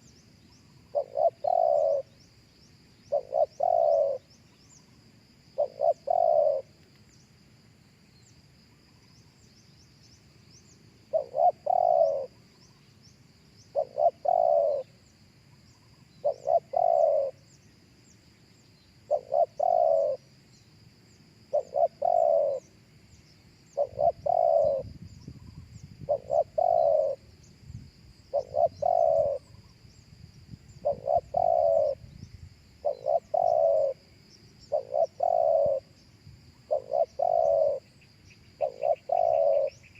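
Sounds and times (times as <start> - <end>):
dove cooing: 0.9 - 2.1, 3.1 - 4.3, 5.6 - 6.8, 11.1 - 12.4, 13.7 - 15.0, 16.2 - 17.6, 19.1 - 20.3, 21.5 - 22.7, 23.7 - 27.3, 28.3 - 29.7, 30.7 - 32.2, 32.8 - 36.0, 36.6 - 37.9, 38.6 - 39.9.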